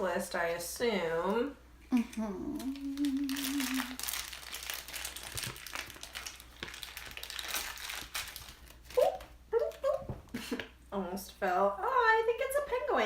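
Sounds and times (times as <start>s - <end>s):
short voice sounds: 1.9s - 4.0s
packaging crinkling and tearing: 2.6s - 10.0s.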